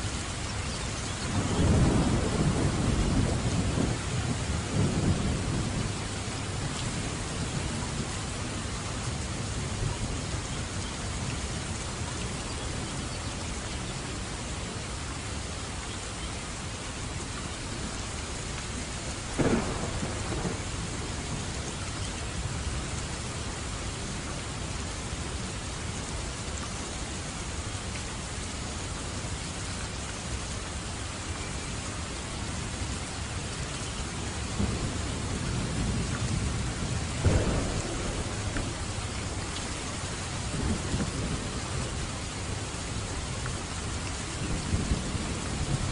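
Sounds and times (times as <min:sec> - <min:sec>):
steady rain falling: 0:00.0 - 0:45.9
thunder rumbles: 0:01.2 - 0:13.1, 0:18.8 - 0:25.4, 0:34.1 - 0:45.9
thunderclap: 0:19.4 - 0:21.5, 0:34.6 - 0:41.8.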